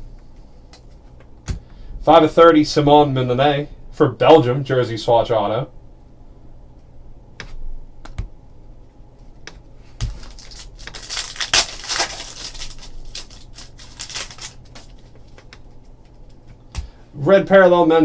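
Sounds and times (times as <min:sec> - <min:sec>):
cards rustling: 0:09.2 - 0:17.0
wrapper crinkling: 0:09.9 - 0:16.3.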